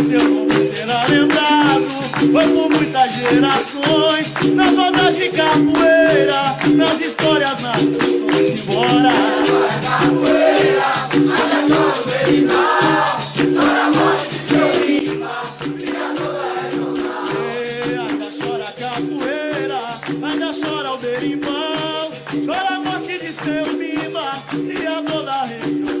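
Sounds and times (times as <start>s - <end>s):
berimbau two alternating notes: 0.0s - 20.3s
fast percussion beat: 0.0s - 26.0s
shaken rattle: 0.0s - 26.0s
voices singing: 0.0s - 26.0s.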